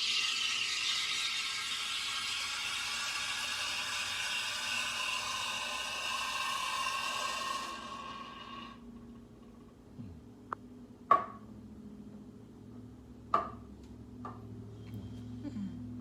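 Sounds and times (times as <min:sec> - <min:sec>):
espresso machine hissing: 0:00.0 - 0:08.8.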